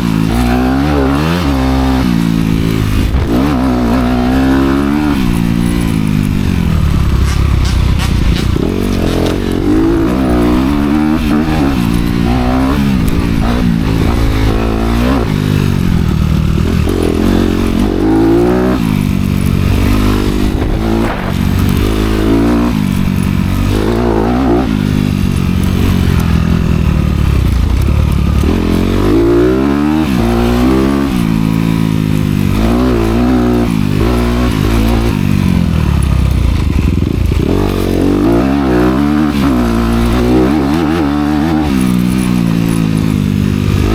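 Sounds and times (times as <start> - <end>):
dirt bike engine revving: 0.0 - 43.9.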